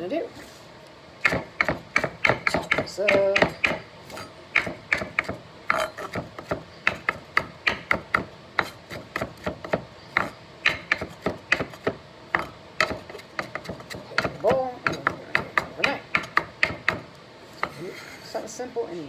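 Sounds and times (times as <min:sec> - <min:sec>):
knife chopping herbs: 0:01.2 - 0:17.9.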